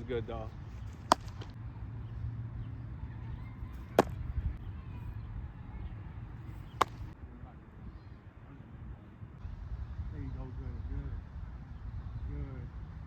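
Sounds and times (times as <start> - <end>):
baseball impact smack: 0.6 - 1.6, 3.8 - 4.6, 6.5 - 7.2.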